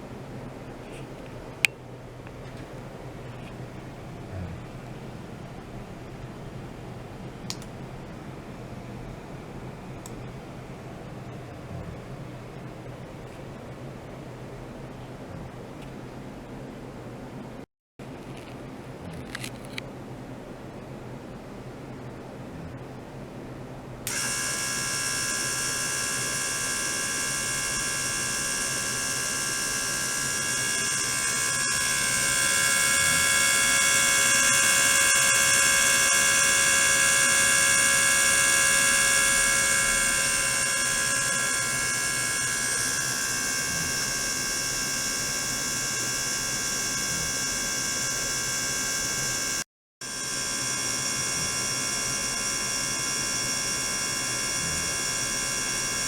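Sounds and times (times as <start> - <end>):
ultrasonic tank high whine: 24.0 - 56.0.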